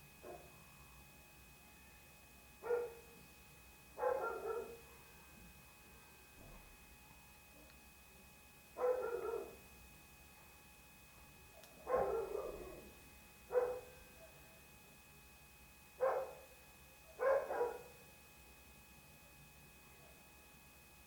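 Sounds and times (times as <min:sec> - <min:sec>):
dog barking: 0:00.2 - 0:00.5, 0:02.6 - 0:03.1, 0:04.0 - 0:04.9, 0:08.8 - 0:09.6, 0:11.8 - 0:12.9, 0:13.5 - 0:14.6, 0:16.0 - 0:16.5, 0:17.1 - 0:18.0.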